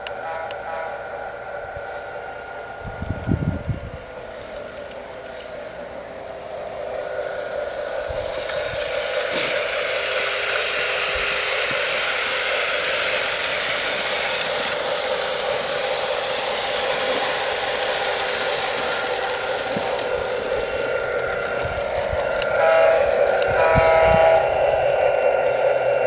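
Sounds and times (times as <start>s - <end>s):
model train motor whirring: 0.0s - 26.0s
wheels clattering on rails: 6.9s - 26.0s.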